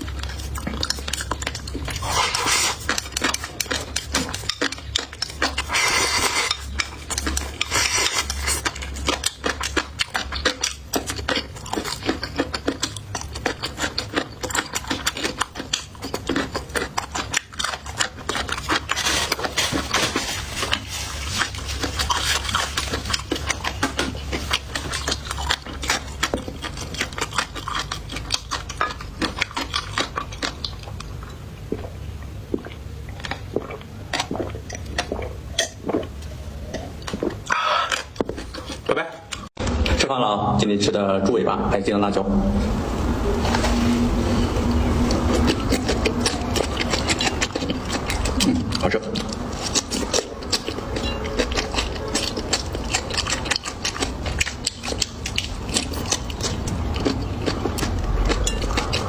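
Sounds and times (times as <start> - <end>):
chewing and biting clicks: 0.0 - 40.0, 44.6 - 59.0
utensils clinking against dishes: 45.3 - 53.6, 58.2 - 59.0.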